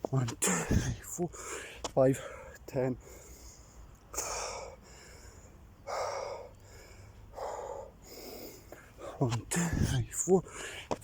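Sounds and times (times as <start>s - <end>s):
man breathing hard: 0.6s - 11.0s.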